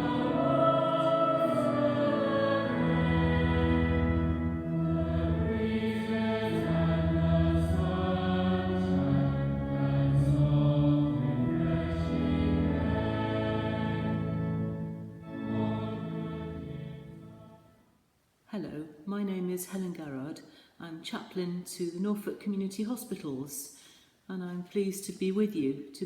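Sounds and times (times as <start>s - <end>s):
choir singing held notes: 0.0s - 17.8s.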